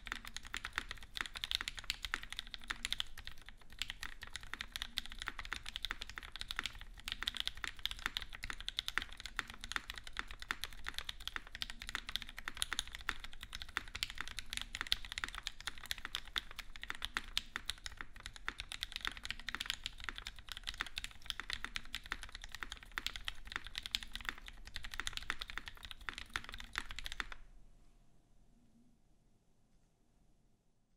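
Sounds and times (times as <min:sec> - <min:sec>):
mechanical keyboard typing: 0:00.0 - 0:27.4.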